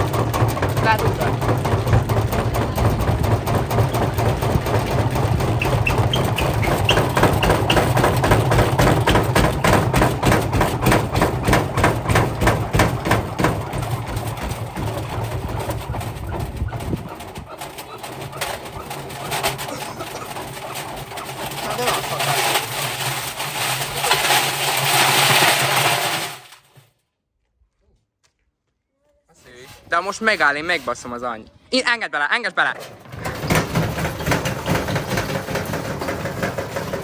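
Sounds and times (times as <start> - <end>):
washing machine motor hum: 0.0 - 25.8
bricks banging in washing machine: 0.0 - 26.4, 32.8 - 37.0
short high squeaks: 5.6 - 7.9.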